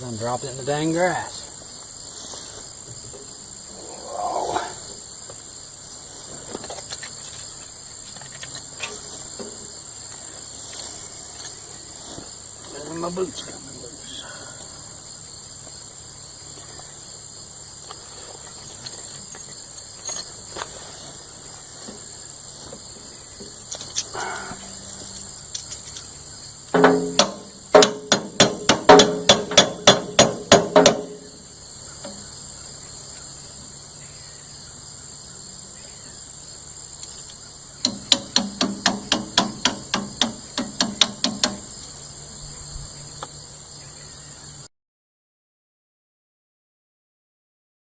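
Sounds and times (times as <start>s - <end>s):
high insect drone: 0.0s - 44.7s
hammer blows on metal: 26.7s - 31.4s, 37.8s - 41.7s.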